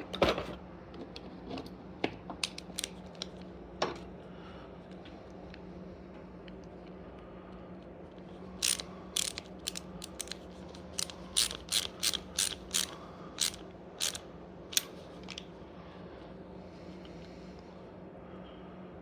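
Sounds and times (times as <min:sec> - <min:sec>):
ratchet wrench clicking: 0:02.5 - 0:03.3, 0:08.6 - 0:15.4.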